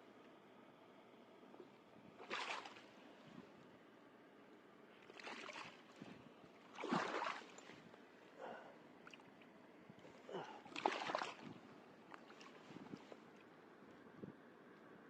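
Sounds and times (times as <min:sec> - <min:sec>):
water splashing and sloshing: 0:01.6 - 0:03.6, 0:04.9 - 0:13.6.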